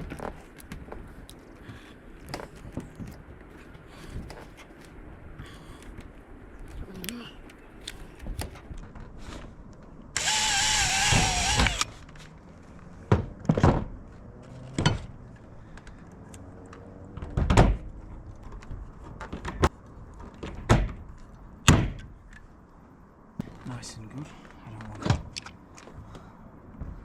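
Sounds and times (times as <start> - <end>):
cordless drill boring metal: 10.2 - 11.9.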